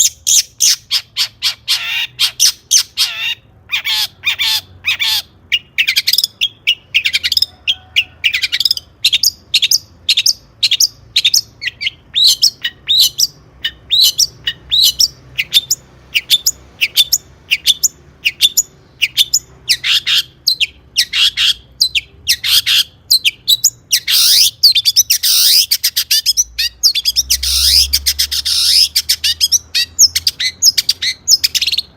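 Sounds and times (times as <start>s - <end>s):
harsh squawky bird calls: 0.0s - 31.9s
bird singing rapid sharp notes: 8.3s - 31.9s.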